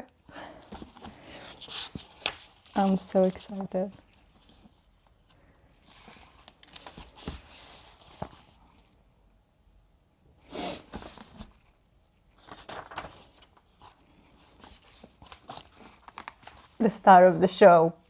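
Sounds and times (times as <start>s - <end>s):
book pages rustling: 0.6s - 8.9s, 10.9s - 16.8s
page swishing: 12.4s - 14.0s.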